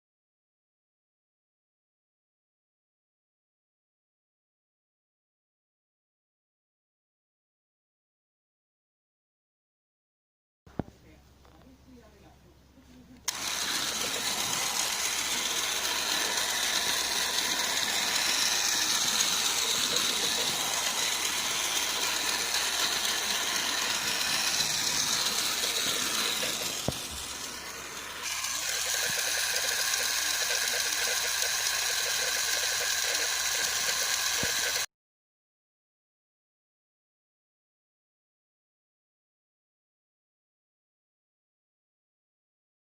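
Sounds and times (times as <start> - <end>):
toy train motor whirring: 13.2 - 34.9.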